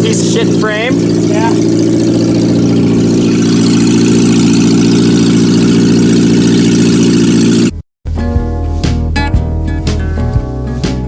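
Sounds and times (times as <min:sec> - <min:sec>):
car engine running: 0:00.0 - 0:07.8.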